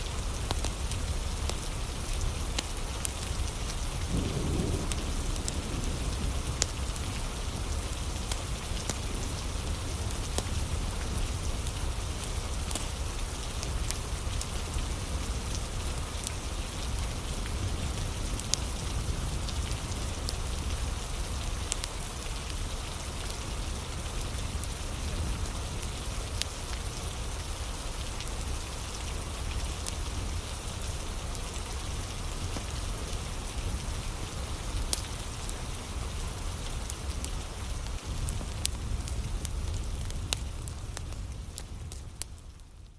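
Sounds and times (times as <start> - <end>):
steady rain falling: 0.0 - 42.9
low rumble: 38.0 - 42.6.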